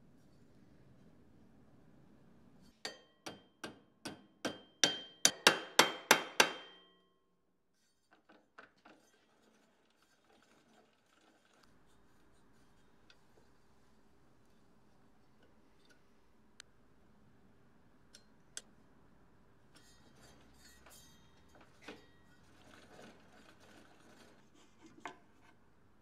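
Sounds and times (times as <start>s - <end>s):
hammer striking metal: 2.8s - 7.1s.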